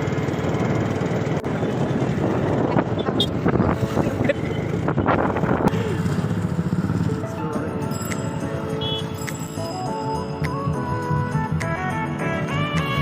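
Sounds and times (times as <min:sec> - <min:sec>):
wind buffeting microphone: 0:01.4 - 0:06.0.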